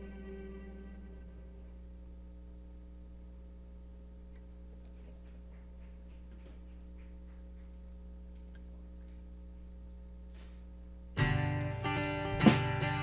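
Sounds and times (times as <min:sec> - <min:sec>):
low electrical hum: 0:00.0 - 0:13.0
faint clicks and taps: 0:04.3 - 0:10.6.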